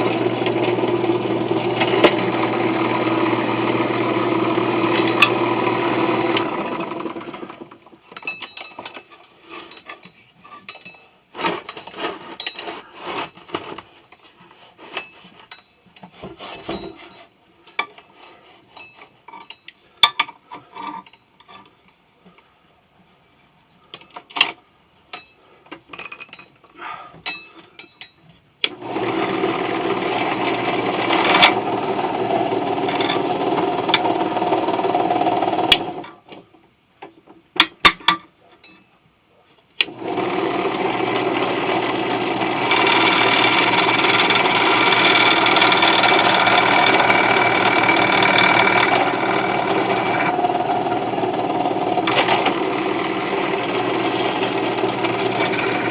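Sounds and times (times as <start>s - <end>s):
electric power tool running: 0.0s - 7.6s, 28.7s - 36.0s, 39.8s - 55.9s.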